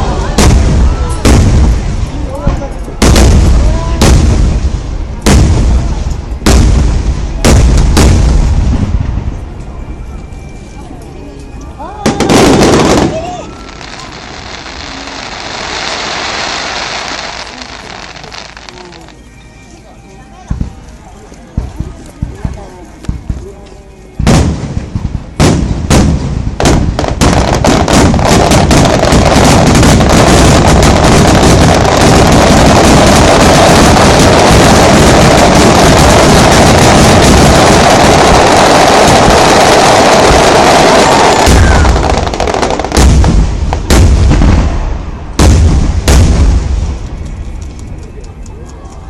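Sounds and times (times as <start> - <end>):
heavy firework booms: 0.0 - 9.4, 12.0 - 18.6, 24.2 - 47.2
fireworks bursting and crackling: 0.0 - 9.7, 11.8 - 19.2, 20.4 - 49.0.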